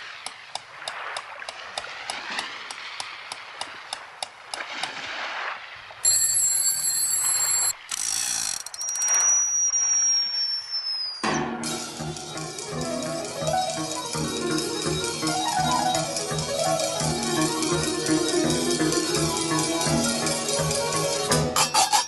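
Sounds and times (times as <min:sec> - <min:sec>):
long falling whistle: 0:08.8 - 0:11.3.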